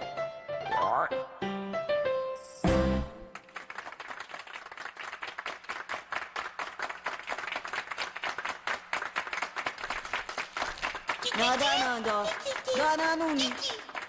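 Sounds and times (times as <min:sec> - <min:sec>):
crowd applauding: 0:03.2 - 0:14.0.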